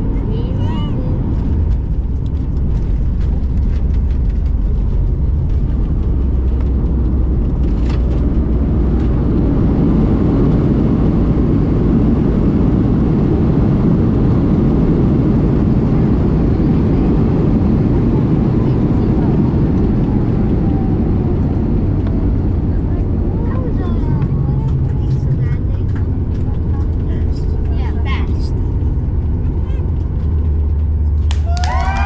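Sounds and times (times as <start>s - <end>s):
vehicle rumbling: 0.0s - 32.0s.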